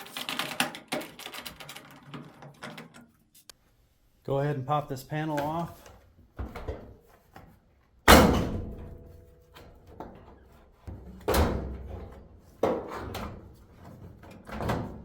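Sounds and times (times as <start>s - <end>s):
panel bang ringing: 8.1s - 8.9s.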